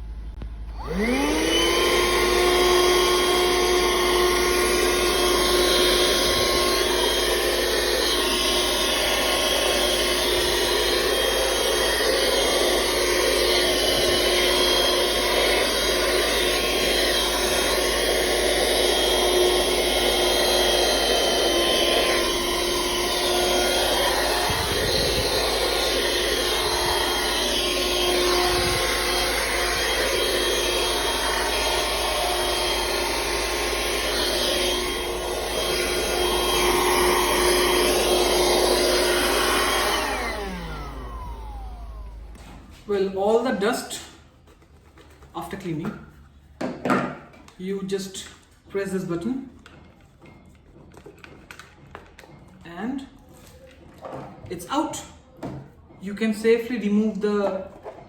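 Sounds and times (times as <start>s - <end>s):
handheld vacuum cleaner whining: 0.4s - 58.0s.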